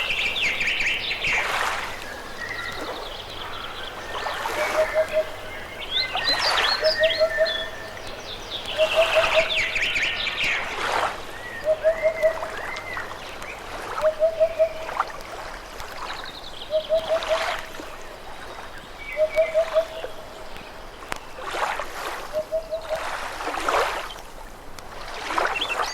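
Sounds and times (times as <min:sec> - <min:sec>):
bird repeating low call: 0:00.0 - 0:10.5
birds chirping and whistling: 0:00.0 - 0:10.7
river water running: 0:00.0 - 0:25.9.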